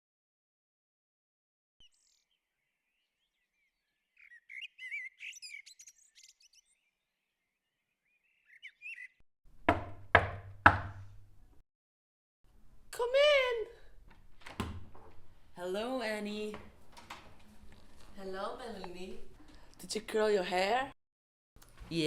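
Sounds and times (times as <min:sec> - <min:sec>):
birds chirping: 0:01.8 - 0:09.2
knocks on a door: 0:09.6 - 0:11.0.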